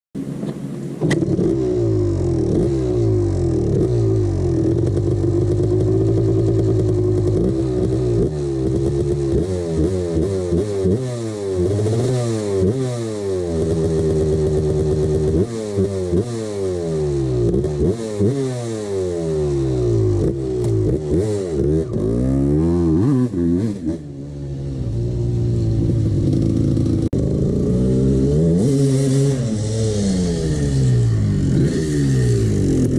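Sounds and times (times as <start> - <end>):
two-stroke engine revving: 1.0 - 24.2, 24.9 - 32.9.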